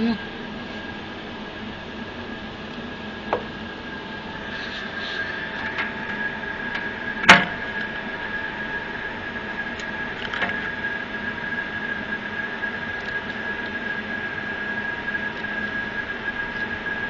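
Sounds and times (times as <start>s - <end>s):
machinery whining over a hum: 0.0s - 17.0s.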